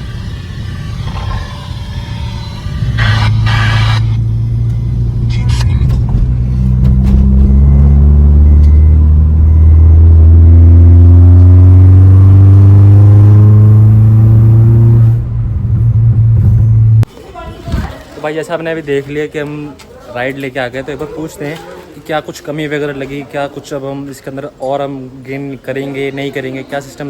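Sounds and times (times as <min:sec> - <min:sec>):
car engine accelerating: 0:00.0 - 0:17.1.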